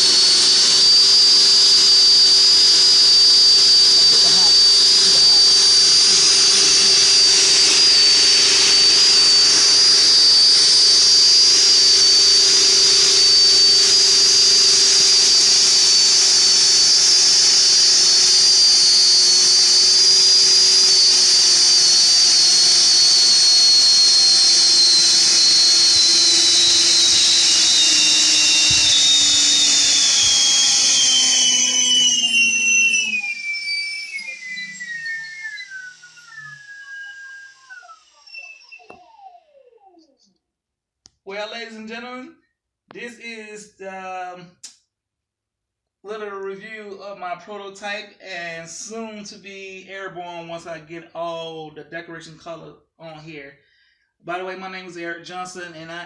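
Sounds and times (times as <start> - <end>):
electric ducted fans whining: 0.0 - 39.6.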